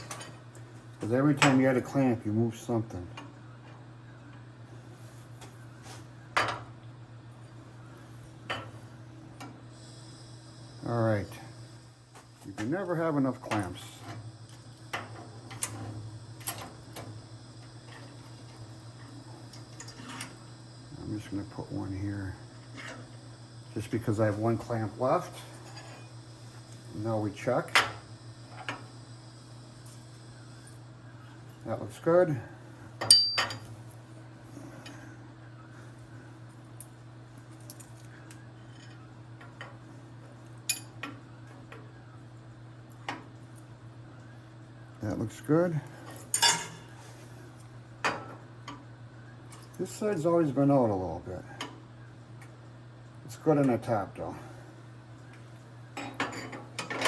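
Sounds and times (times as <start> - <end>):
steady low hum: 0.0 - 57.0
steel tools clinking on tubing: 33.0 - 33.7, 46.3 - 46.8.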